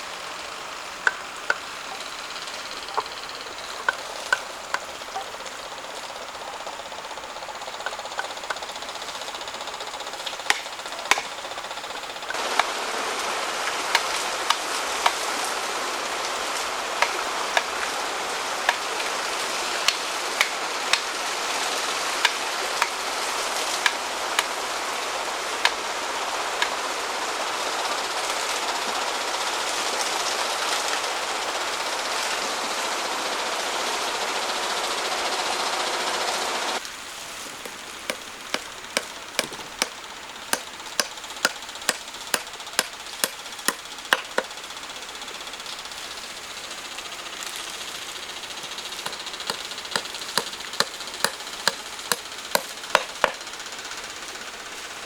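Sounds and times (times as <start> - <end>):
tools knocking on wood: 10.3 - 12.4, 37.6 - 44.5, 49.0 - 53.4.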